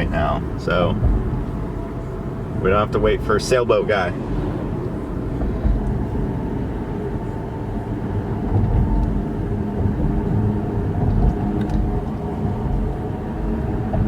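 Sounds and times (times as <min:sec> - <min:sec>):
car engine: 0:00.0 - 0:14.0
road rumble: 0:00.0 - 0:14.0.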